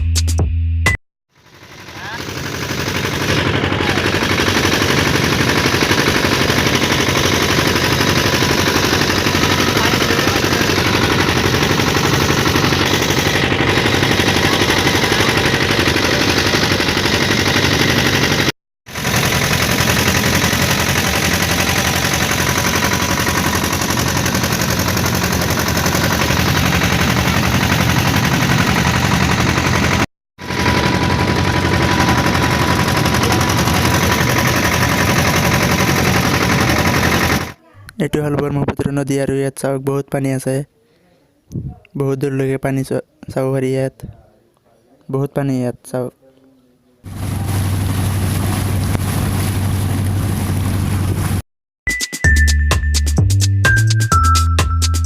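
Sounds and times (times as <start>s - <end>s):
motorboat engine chugging: 1.3s - 37.6s, 47.1s - 51.4s.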